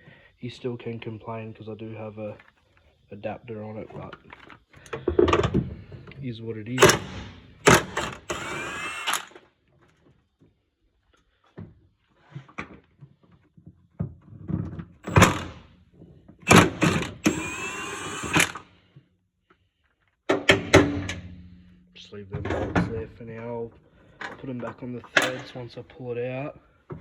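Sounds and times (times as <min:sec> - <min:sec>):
impact wrench whining: 0:06.8 - 0:09.4, 0:15.0 - 0:15.7, 0:16.4 - 0:18.7.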